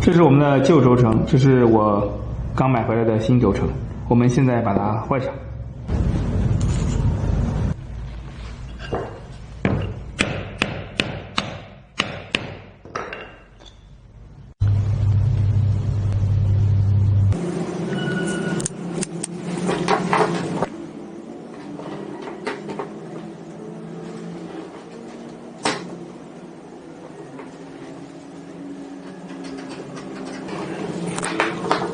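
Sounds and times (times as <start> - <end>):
steady low hum: 14.0 - 19.8.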